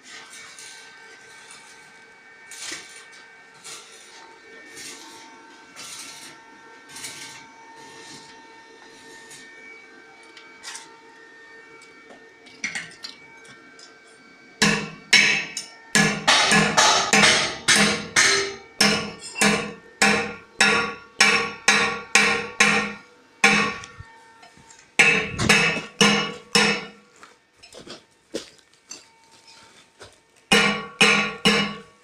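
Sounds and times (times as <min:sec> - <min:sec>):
sharp ringing strikes: 0:14.6 - 0:24.1, 0:25.0 - 0:27.0, 0:30.5 - 0:32.0.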